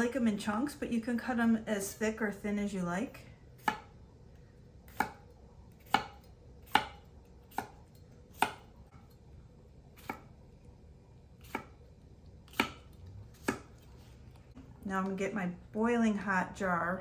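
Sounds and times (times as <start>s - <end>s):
knife slicing cucumbers: 3.6s - 3.9s, 4.9s - 8.7s, 10.0s - 10.3s, 11.4s - 11.8s, 12.5s - 14.1s.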